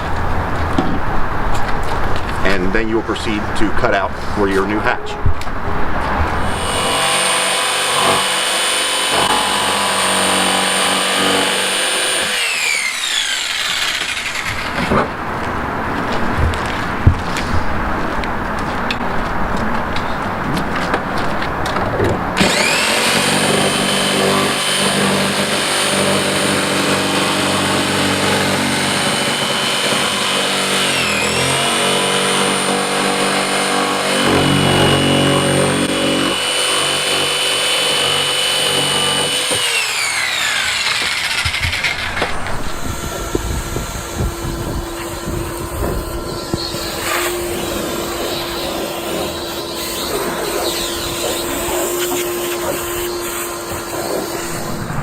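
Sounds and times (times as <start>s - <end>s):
power saw motor whining: 6.4s - 15.2s, 22.4s - 55.0s.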